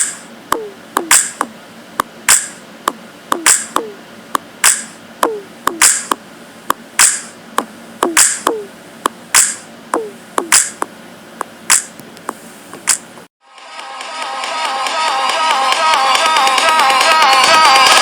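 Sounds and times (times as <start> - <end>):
sparse percussion beat: 0.0 - 4.0, 4.6 - 11.9.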